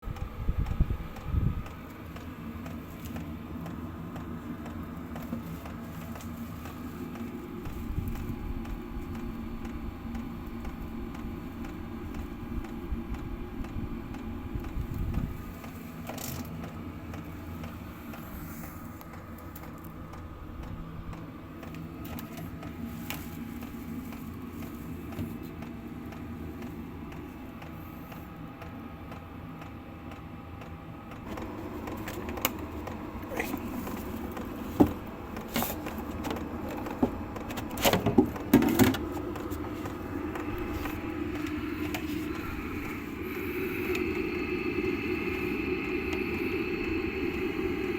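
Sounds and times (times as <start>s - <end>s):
air heater fan drone: 0.0s - 47.9s
sharp clicks and knocks: 29.1s - 44.1s.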